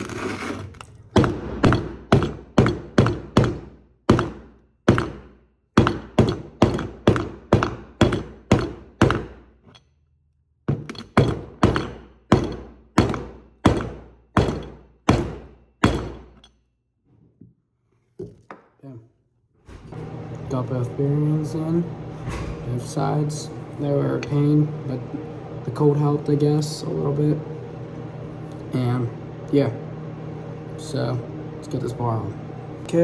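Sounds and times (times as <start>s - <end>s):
hammer blows ringing: 1.2s - 9.4s, 11.2s - 16.4s.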